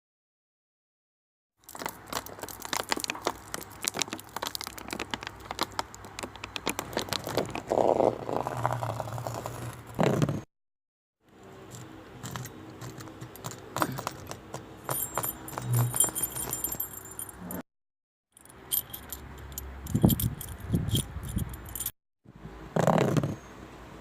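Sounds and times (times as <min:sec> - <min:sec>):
metal jangling and rattling: 0:11.7 - 0:17.6, 0:18.4 - 0:21.9.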